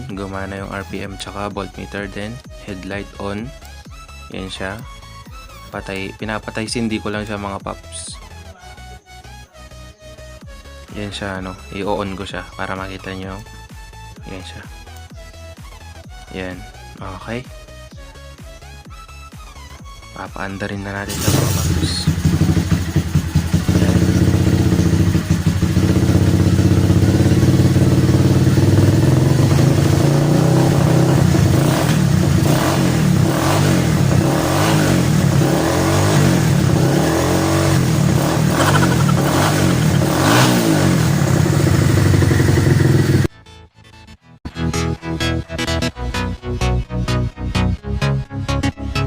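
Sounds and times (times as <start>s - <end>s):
motorcycle engine revving: 20.8s - 43.3s.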